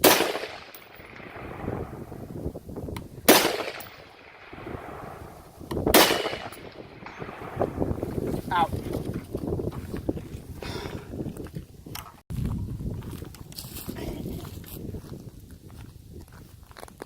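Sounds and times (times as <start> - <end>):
rifle shots: 0.0 - 2.3, 3.2 - 8.0.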